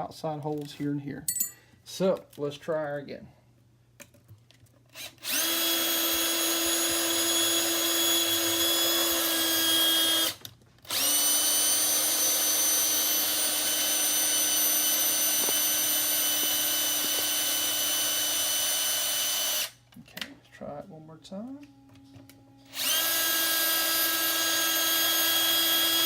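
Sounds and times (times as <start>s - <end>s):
electric drill whining: 4.9s - 19.8s, 22.7s - 26.0s.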